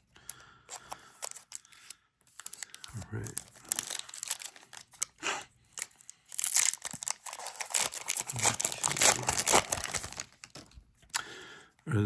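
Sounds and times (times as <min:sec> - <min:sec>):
foil wrapper crinkling and tearing: 0:00.7 - 0:10.8.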